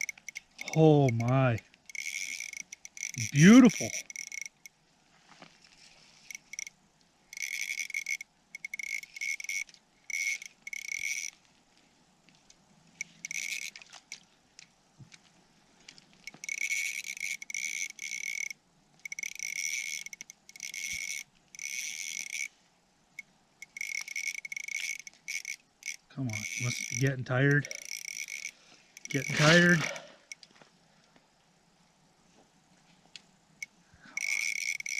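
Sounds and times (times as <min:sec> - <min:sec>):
fishing reel drag buzzing: 0:00.0 - 0:04.7, 0:06.2 - 0:11.4, 0:13.0 - 0:14.2, 0:16.2 - 0:22.5, 0:23.2 - 0:30.4, 0:33.6 - 0:34.9.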